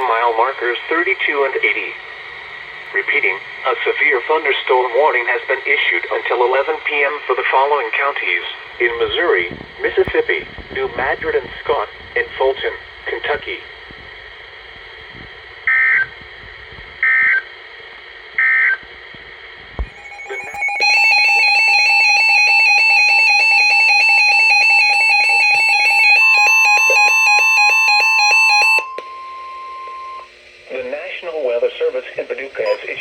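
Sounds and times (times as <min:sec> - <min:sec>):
electronic alert alarm beeping: 0:19.9 - 0:30.3, 0:32.6 - 0:33.0
data bursts: 0:19.9 - 0:33.0
steady warning alarm tone: 0:19.9 - 0:33.0.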